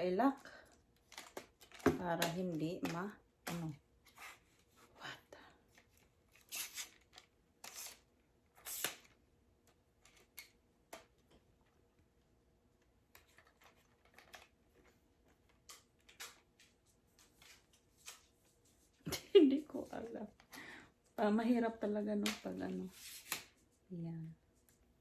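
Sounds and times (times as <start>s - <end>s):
hands handling plastic parts: 0.7s - 4.7s, 13.1s - 18.3s.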